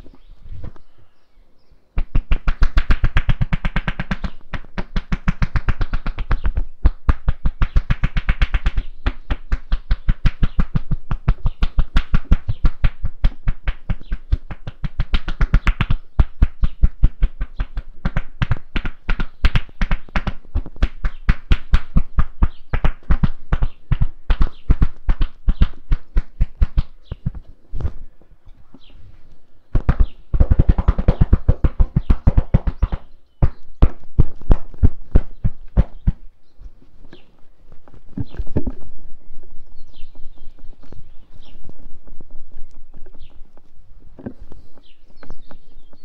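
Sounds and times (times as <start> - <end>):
hands chopping and slapping on body: 2.0 - 27.4, 29.7 - 36.3.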